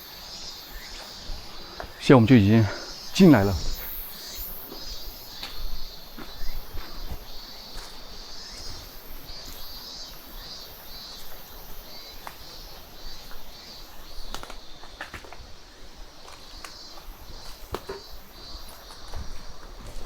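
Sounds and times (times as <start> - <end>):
insects chirping: 0.0 - 20.0.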